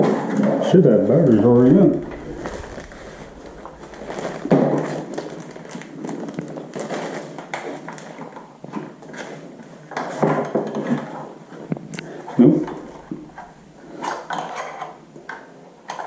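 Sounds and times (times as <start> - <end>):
rustling: 1.5 - 6.2.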